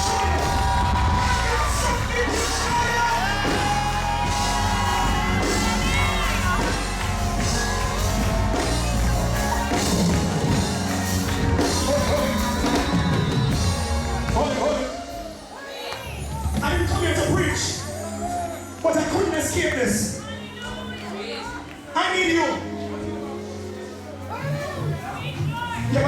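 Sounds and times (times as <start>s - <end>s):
voices singing and shouting: 0.0s - 19.0s
gospel band playing: 0.0s - 26.0s.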